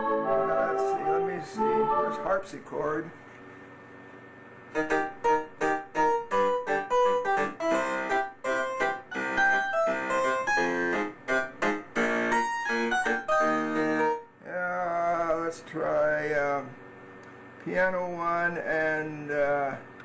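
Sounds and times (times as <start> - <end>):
harpsichord notes on keyboard: 0.0 - 2.5, 4.8 - 14.2.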